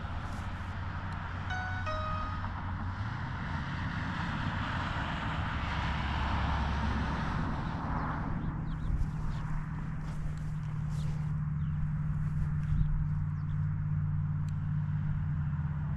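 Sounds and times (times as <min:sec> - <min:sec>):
two-note electronic beep: 0:01.5 - 0:03.0.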